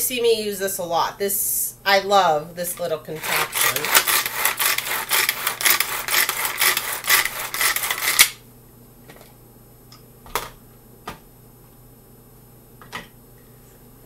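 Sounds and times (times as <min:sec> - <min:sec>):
blades rasping through vegetables: 0:03.1 - 0:08.2
pull-cord chopper cord pulls: 0:03.3 - 0:08.4.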